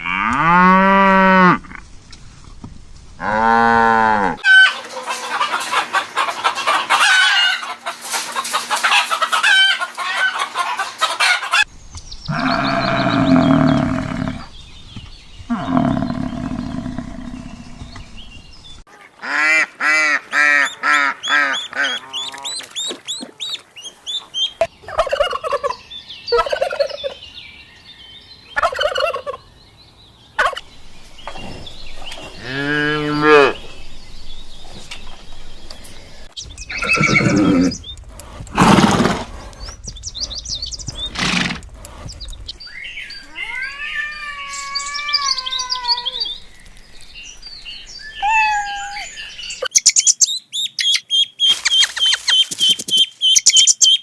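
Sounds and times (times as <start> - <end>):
poultry squawking: 4.3 - 11.7, 19.2 - 27.1, 28.6 - 29.4, 30.4 - 37.9.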